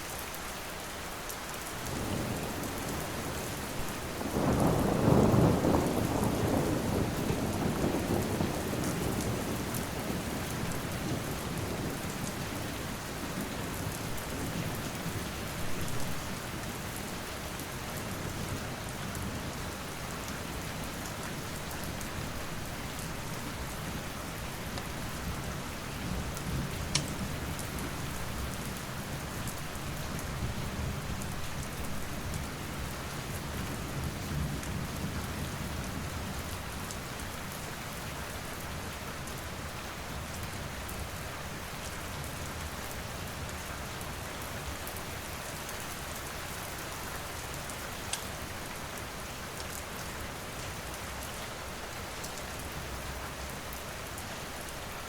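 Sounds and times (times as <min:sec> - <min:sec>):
steady rain: 0:00.0 - 0:55.0
low rumble of thunder: 0:01.9 - 0:37.6
wood fire crackling: 0:26.8 - 0:27.3.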